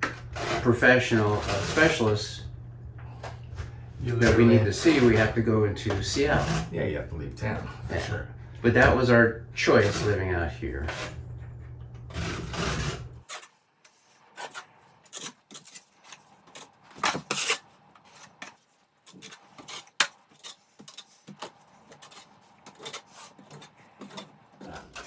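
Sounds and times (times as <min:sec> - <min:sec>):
tool scraping compound on drywall: 0:00.0 - 0:02.2, 0:04.0 - 0:11.3, 0:12.1 - 0:25.0
low hum with hiss: 0:00.1 - 0:13.2.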